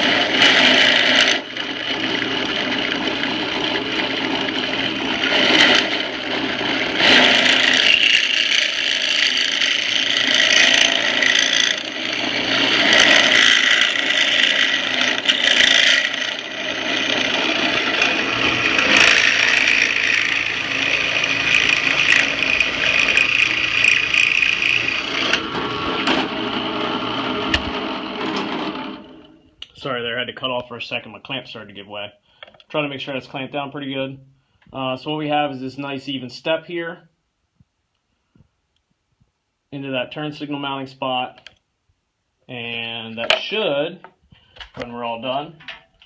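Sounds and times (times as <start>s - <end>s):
power drill cutting metal: 0.0s - 29.3s.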